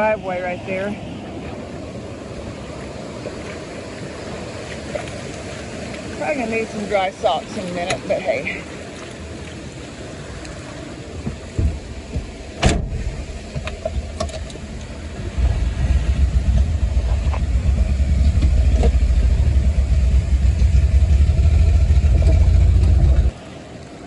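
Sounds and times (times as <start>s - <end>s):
vehicle engine rumble: 0.0s - 24.0s
sharp knocks and clunks: 11.2s - 14.6s.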